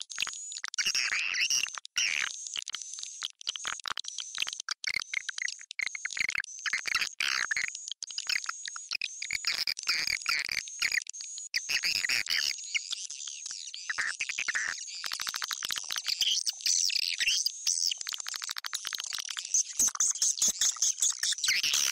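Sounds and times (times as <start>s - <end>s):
high twittering bird chirps: 19.6s - 21.9s.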